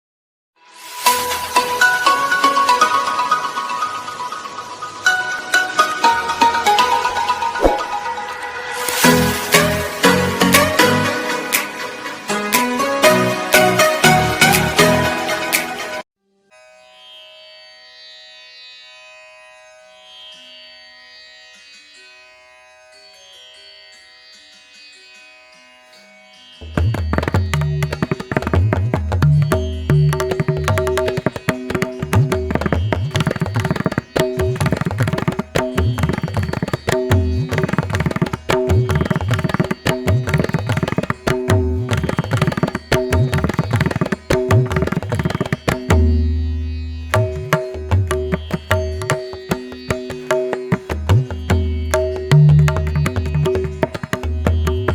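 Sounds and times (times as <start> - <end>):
sitar-like strings: 0.7 - 54.9
bass: 9.0 - 11.2
tabla-like drums: 26.6 - 54.9.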